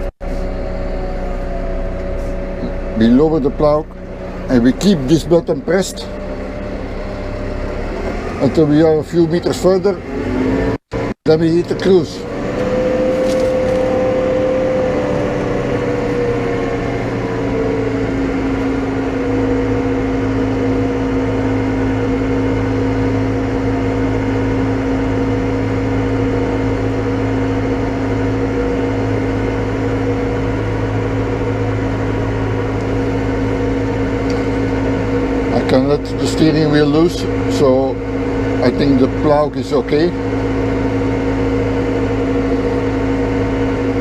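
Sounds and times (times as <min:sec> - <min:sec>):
tractor diesel engine under load: 0:00.0 - 0:44.0.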